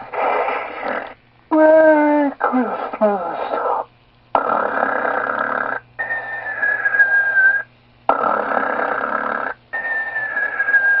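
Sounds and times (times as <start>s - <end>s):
steady low hum: 0.0s - 11.0s
toy snoring with whistling breath: 4.4s - 11.0s.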